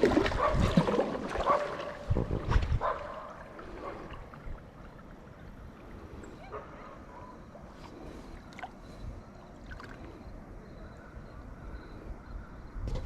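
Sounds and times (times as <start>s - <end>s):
paddle splashing water: 0.0s - 6.1s.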